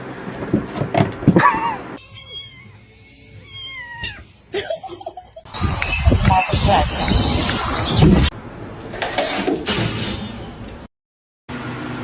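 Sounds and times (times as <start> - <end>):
cat meowing: 1.4 - 4.4.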